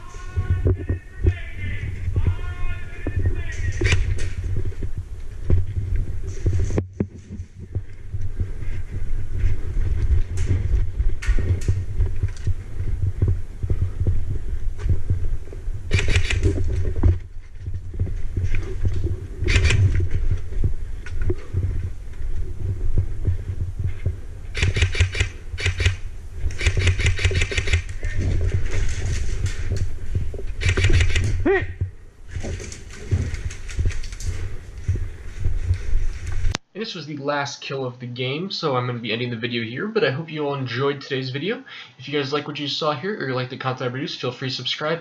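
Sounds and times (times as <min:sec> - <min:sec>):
constant low rumble: 0:00.0 - 0:36.6
airsoft guns firing automatic bursts: 0:15.9 - 0:16.6, 0:19.5 - 0:20.0, 0:24.6 - 0:28.0, 0:30.6 - 0:31.3.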